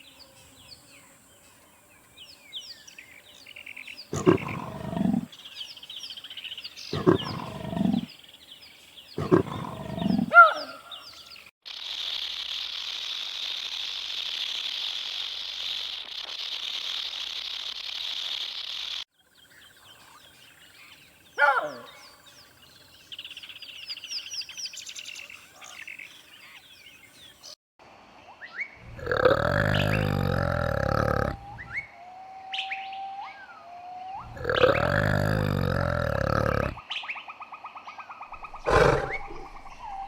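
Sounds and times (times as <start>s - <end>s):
deep drawn-out animal calls: 4.1s - 5.4s, 6.9s - 8.1s, 9.2s - 10.9s, 28.8s - 36.8s, 38.3s - 40.0s.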